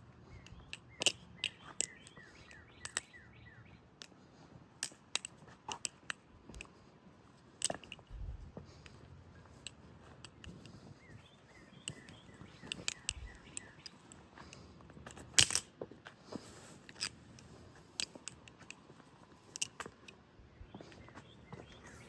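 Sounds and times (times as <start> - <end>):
butterfly knife clicking and clacking: 0.3 - 3.3, 4.8 - 6.8, 7.6 - 8.1, 9.6 - 10.8, 11.7 - 15.7, 16.8 - 20.2.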